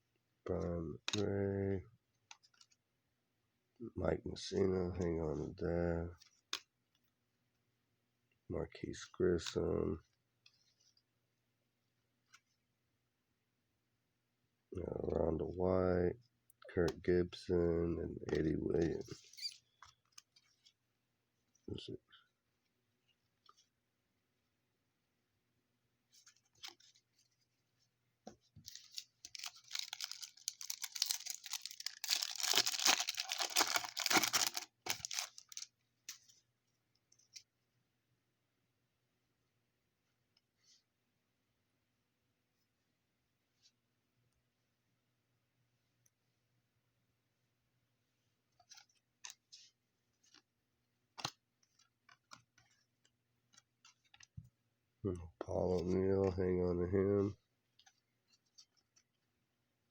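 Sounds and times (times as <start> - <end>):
wrapper tearing and crumpling: 28.7 - 35.6
cards flipped by hand: 51.1 - 54.4.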